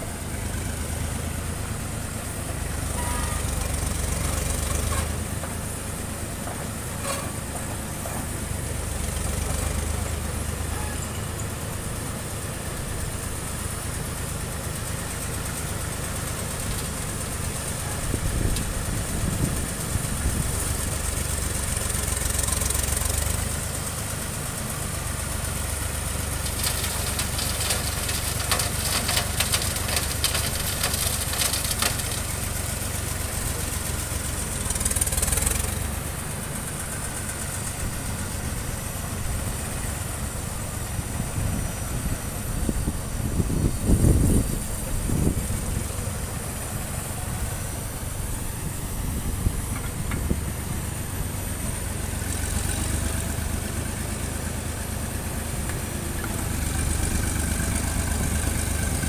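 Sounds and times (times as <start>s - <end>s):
engine idling: 0.0s - 59.0s
rapid clatter of ticks: 26.4s - 32.3s.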